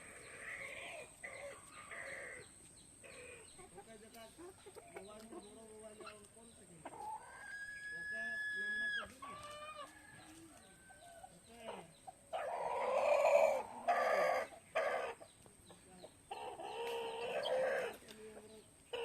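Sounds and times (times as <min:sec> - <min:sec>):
chickens clucking: 0:00.0 - 0:19.0
rooster crowing: 0:07.2 - 0:11.3.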